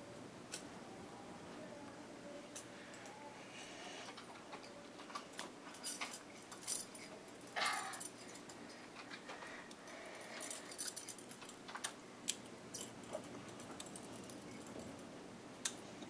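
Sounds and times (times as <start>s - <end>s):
handcuffs clicking and rattling: 4.6s - 8.6s, 9.8s - 15.1s.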